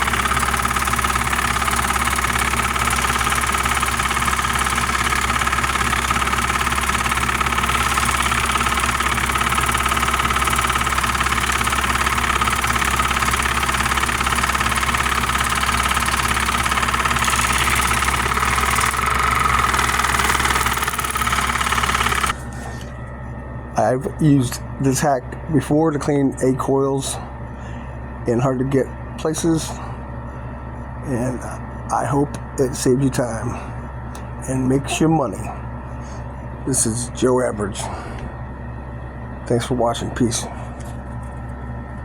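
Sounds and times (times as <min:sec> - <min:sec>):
small pump motor buzzing: 0:00.0 - 0:23.0.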